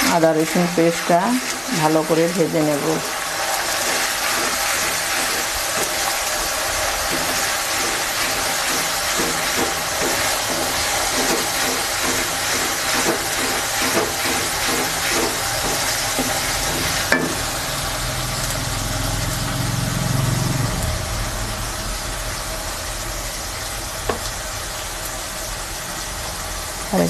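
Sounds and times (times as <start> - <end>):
spatula stirring in a pan: 0.0 - 17.6
onions sizzling in hot oil: 0.0 - 27.0.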